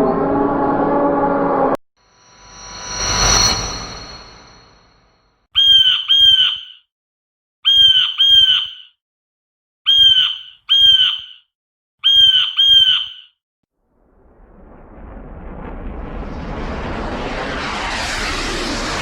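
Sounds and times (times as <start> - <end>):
blue jay harsh call: 5.6 - 6.8, 7.7 - 8.9, 9.9 - 11.4, 12.0 - 13.3.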